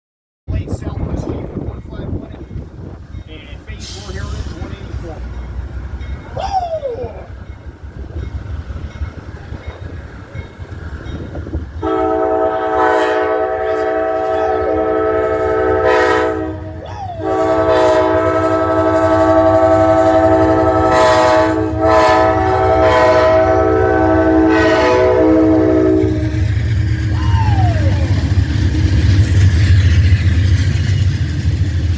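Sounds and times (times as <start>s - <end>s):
low train rumble: 0.5s - 31.9s
locomotive air horn chord: 11.8s - 26.4s.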